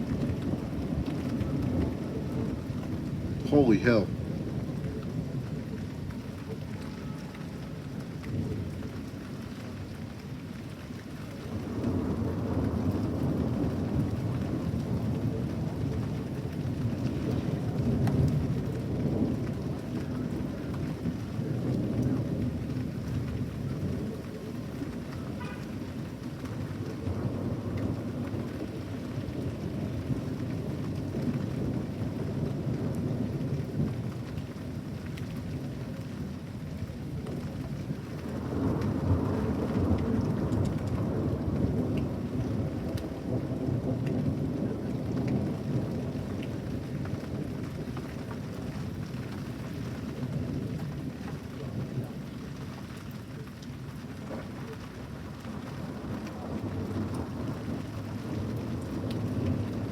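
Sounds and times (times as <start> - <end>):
steady rain: 0.0 - 59.9
rolling thunder: 11.5 - 34.9, 37.0 - 53.1, 54.2 - 59.9.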